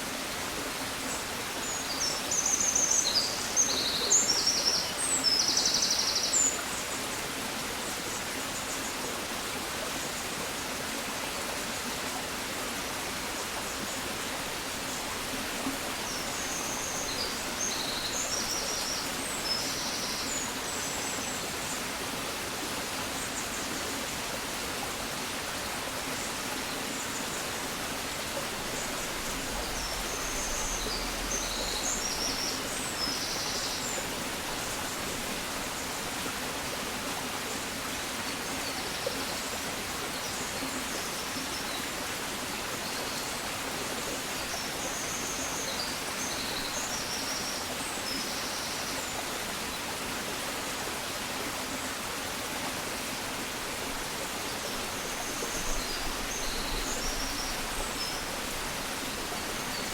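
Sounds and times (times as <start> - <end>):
rushing water: 0.0 - 59.9.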